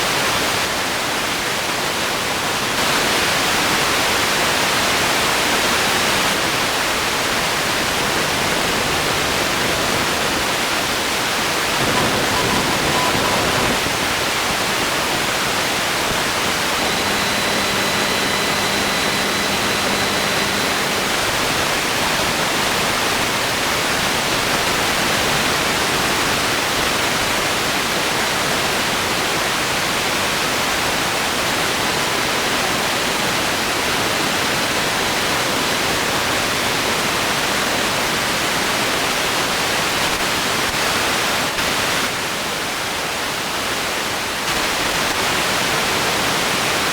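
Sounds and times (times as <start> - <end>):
television static hiss: 2.6 - 27.5
faint brief tones: 11.8 - 14.0, 16.5 - 22.8.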